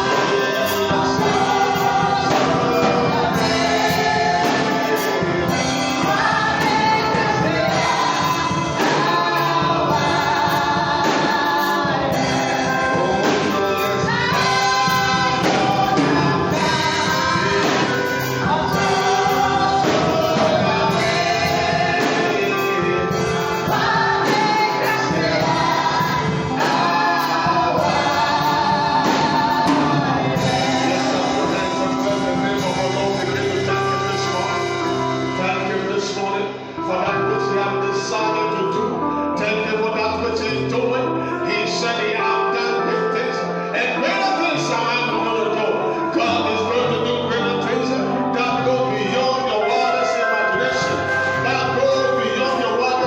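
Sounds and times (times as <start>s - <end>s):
percussion: 0.0s - 36.2s
choir singing gospel music: 0.0s - 53.0s
instrumental accompaniment: 0.0s - 53.0s.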